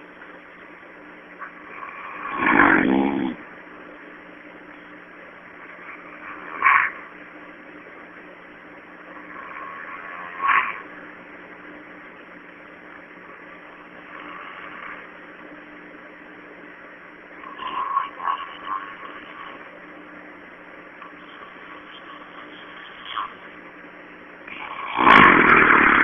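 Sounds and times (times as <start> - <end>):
steady low hum: 0.0 - 26.0
man snoring and snorting: 1.8 - 3.4.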